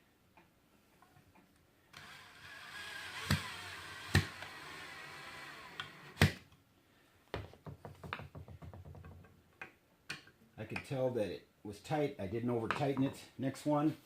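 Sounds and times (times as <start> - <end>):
power drill driving screw: 1.9 - 6.4.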